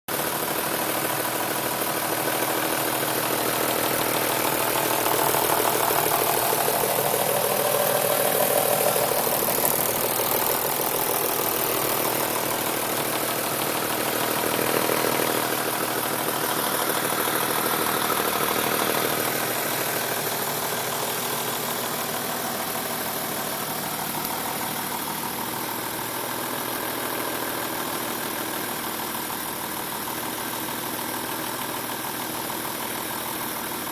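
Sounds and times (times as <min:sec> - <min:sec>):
car engine idling: 0:00.1 - 0:33.9.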